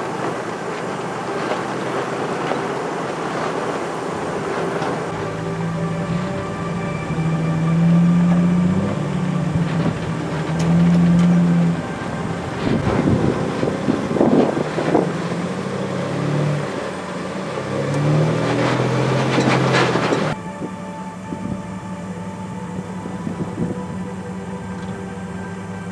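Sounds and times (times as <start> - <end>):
clattering and knocks: 0.0 - 20.4
vehicle engine revving: 0.0 - 25.9.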